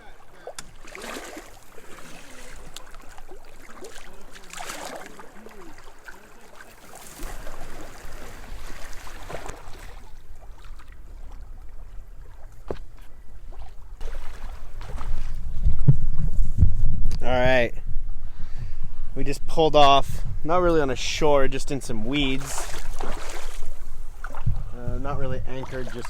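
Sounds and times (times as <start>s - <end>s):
kayak paddle splashing: 0.0s - 15.7s, 22.2s - 24.8s, 25.5s - 26.0s
water lapping at hull: 0.0s - 16.5s, 21.7s - 26.0s
wind rumble on microphone: 7.2s - 26.0s.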